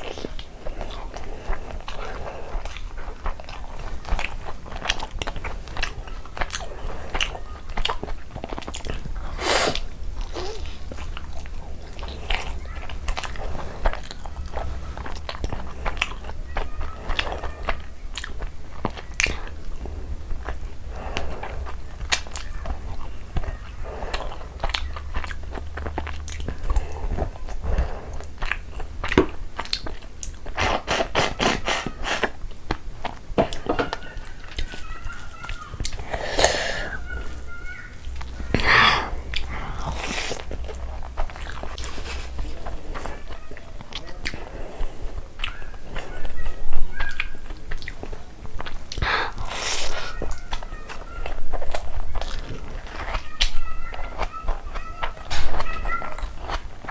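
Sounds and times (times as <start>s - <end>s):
chewing and biting: 0.0s - 56.9s
wet mouth clicks: 27.7s - 32.4s, 35.8s - 43.2s, 47.0s - 50.4s.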